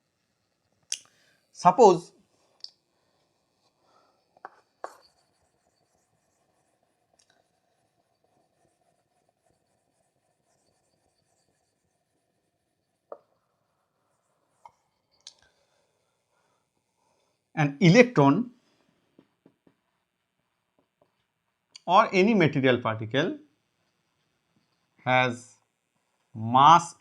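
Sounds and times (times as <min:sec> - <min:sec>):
pen tapping and scratching: 0:03.2 - 0:15.0.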